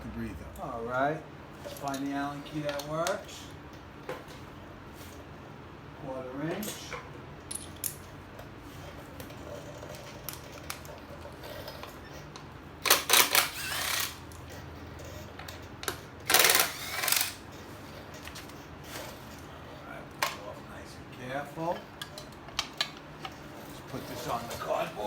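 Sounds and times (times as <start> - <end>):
ratchet clicking rapidly: 12.8 - 14.4, 16.2 - 17.4.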